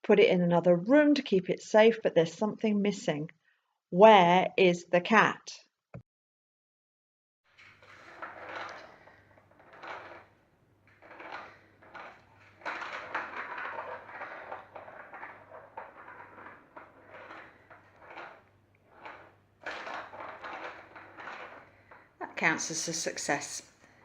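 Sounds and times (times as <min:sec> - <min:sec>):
plastic toy clattering and scraping: 0:07.5 - 0:23.8.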